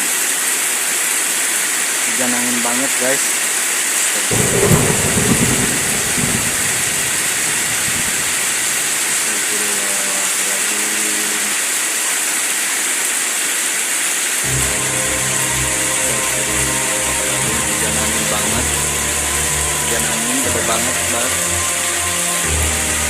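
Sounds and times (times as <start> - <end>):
heavy rain: 0.0 - 23.0
wind: 2.9 - 23.0
low rumble of thunder: 4.3 - 9.3.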